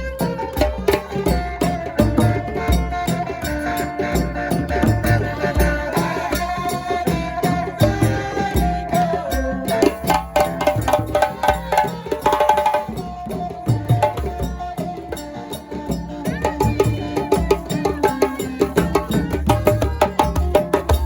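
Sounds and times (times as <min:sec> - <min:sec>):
quick sharp percussion strokes: 0:00.0 - 0:21.0.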